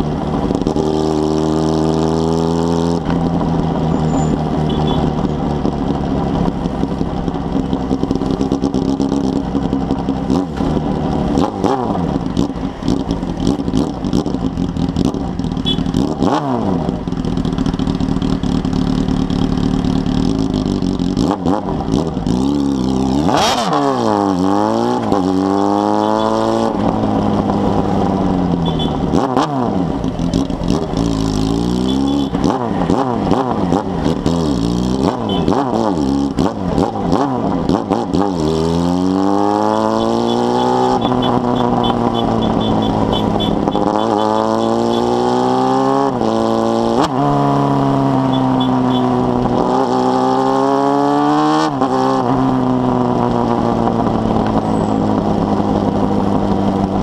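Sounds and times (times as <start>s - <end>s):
motorcycle engine revving: 0.0s - 57.0s.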